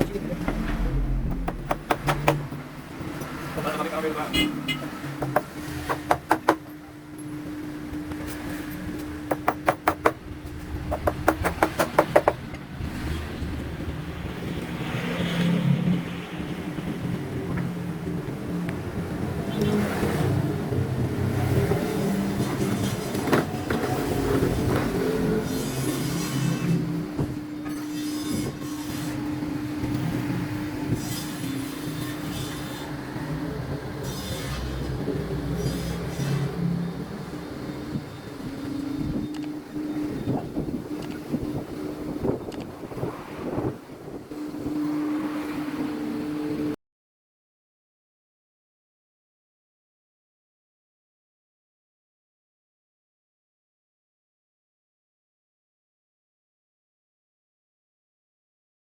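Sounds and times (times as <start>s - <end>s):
sharp knocks: 0.0s - 2.8s, 9.3s - 10.2s, 10.9s - 12.4s
steady low hum: 0.0s - 3.5s
low rumble: 0.0s - 3.6s
mechanical hum with held tone: 0.0s - 14.6s, 16.3s - 46.8s
background traffic: 0.0s - 46.8s.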